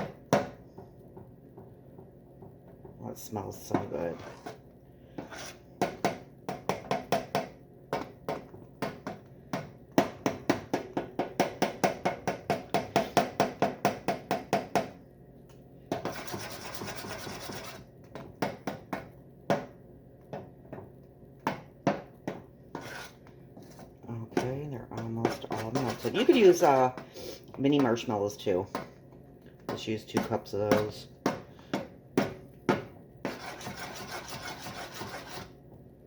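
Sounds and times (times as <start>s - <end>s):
spoon scraping and knocking a pot: 15.9s - 17.8s, 22.3s - 27.1s, 33.2s - 35.5s.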